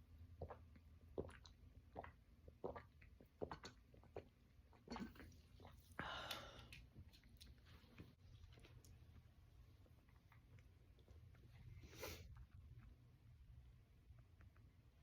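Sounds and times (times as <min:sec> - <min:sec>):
woman gulping a drink: 0:00.4 - 0:07.5.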